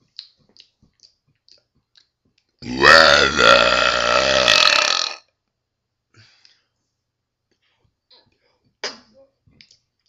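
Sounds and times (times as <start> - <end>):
long loud burp: 2.6 - 5.3.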